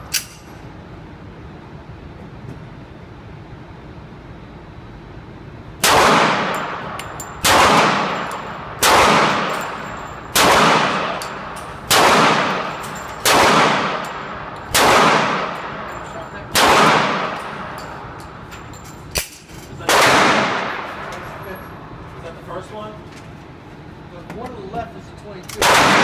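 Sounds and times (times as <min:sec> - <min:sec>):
handgun shots echoing: 0:05.8 - 0:15.9, 0:16.5 - 0:17.8, 0:25.6 - 0:26.0.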